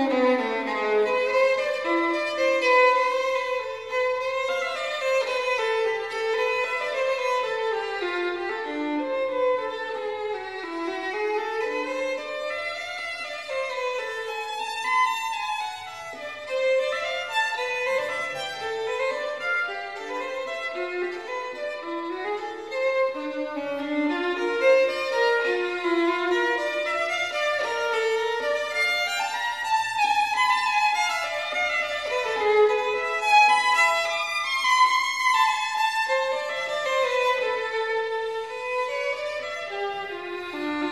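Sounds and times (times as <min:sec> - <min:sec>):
violin playing quick melody: 0:00.0 - 0:40.9.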